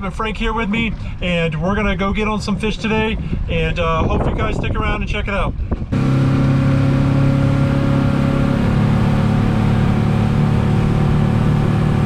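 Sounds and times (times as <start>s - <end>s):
outboard motor running: 5.7s - 12.0s.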